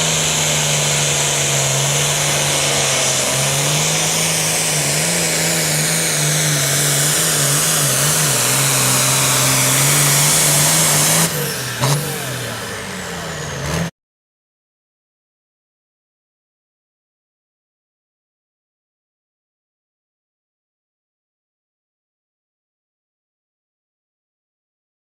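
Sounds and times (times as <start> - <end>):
tractor engine running under load: 0.0 - 13.9.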